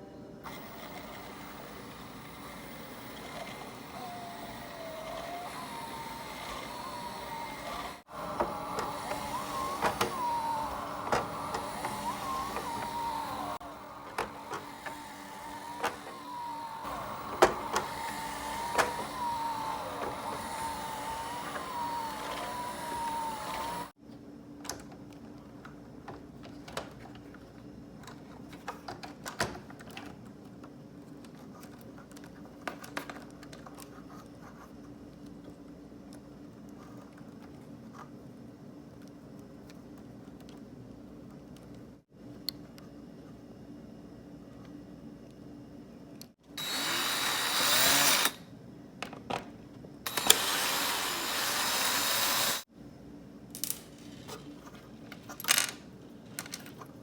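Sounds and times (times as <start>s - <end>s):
electric motor whining: 0.5s - 24.0s, 46.6s - 48.4s, 50.1s - 52.7s.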